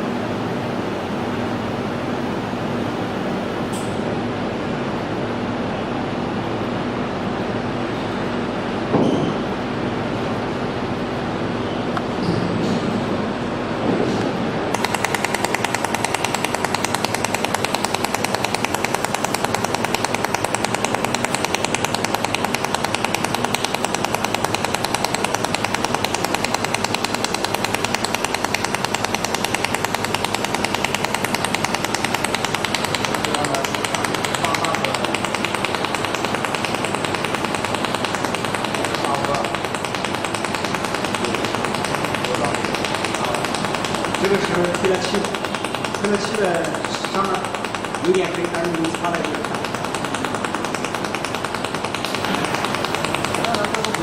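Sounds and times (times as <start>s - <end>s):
welding machine pulsing: 14.7s - 54.0s.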